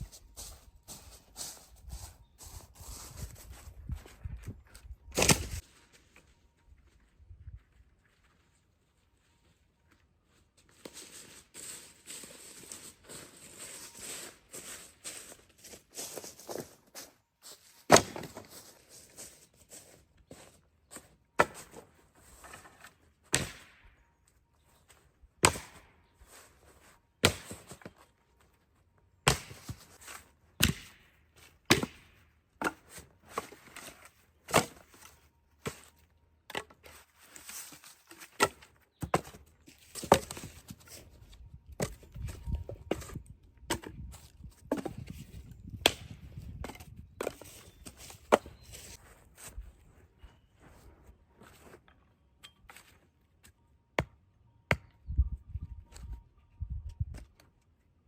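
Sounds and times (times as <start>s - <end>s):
axe chopping wood: 5.2s - 5.6s, 17.9s - 18.4s, 21.4s - 21.8s, 23.3s - 23.8s, 25.4s - 25.9s, 27.2s - 27.9s, 29.2s - 29.9s, 30.6s - 33.0s, 34.5s - 34.8s, 54.0s - 55.0s.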